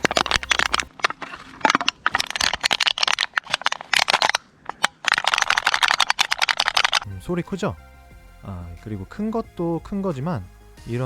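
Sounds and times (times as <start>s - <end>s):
metal can crumpled by hand: 0.0s - 7.0s.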